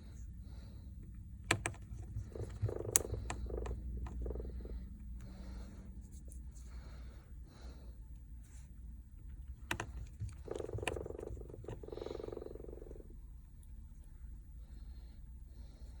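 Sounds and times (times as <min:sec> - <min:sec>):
low steady hum: 0:00.0 - 0:16.0
sharp clicks: 0:01.0 - 0:04.6, 0:09.3 - 0:12.6.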